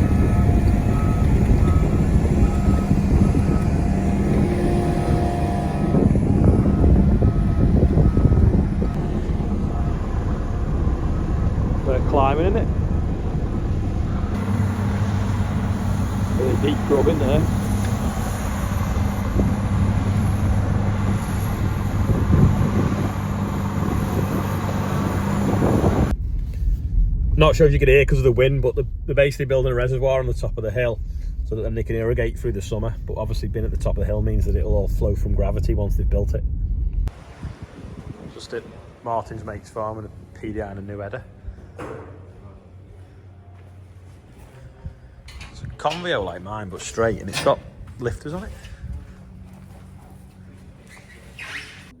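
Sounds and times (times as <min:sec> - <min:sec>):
reversing alarm beeps: 0:00.0 - 0:13.0
bulldozer engine running: 0:00.0 - 0:35.8, 0:36.4 - 0:52.0
wind buffeting microphone: 0:00.0 - 0:41.8, 0:44.2 - 0:50.9.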